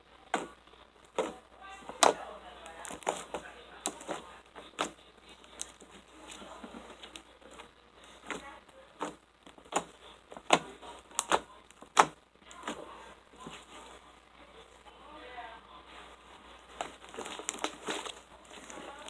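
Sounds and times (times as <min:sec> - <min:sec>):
slime popping and clicking: 0:02.0 - 0:03.2, 0:10.5 - 0:12.2.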